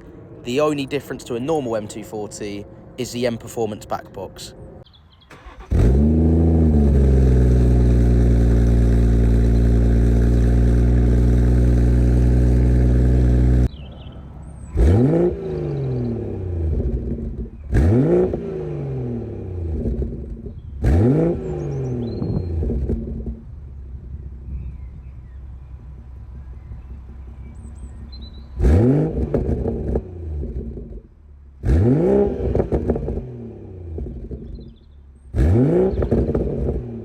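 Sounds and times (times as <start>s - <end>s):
car engine revving: 5.3s - 13.8s, 14.6s - 24.4s, 26.0s - 37.0s
car engine idling: 5.3s - 18.4s, 19.2s - 35.4s.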